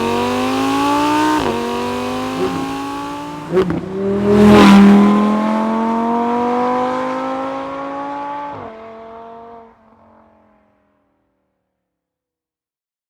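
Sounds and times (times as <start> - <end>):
car engine accelerating: 0.0 - 9.6.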